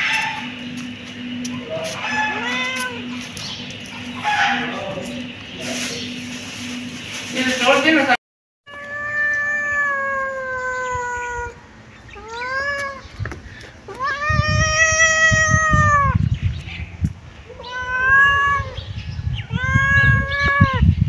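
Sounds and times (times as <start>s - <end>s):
low rumbling noise: 0.0s - 8.2s, 10.9s - 21.0s
kitten meowing: 2.0s - 3.2s, 8.7s - 13.0s, 13.9s - 16.2s, 17.5s - 20.9s.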